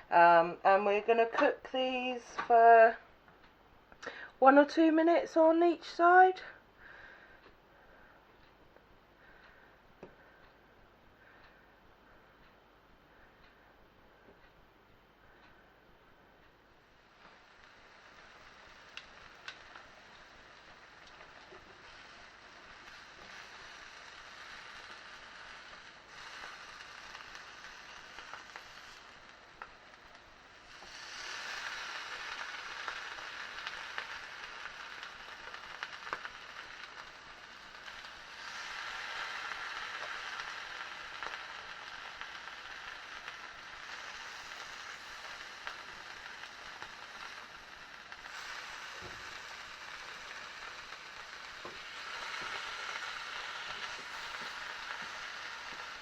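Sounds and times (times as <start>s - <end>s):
cheese sizzling in a frying pan: 16.6s - 56.0s.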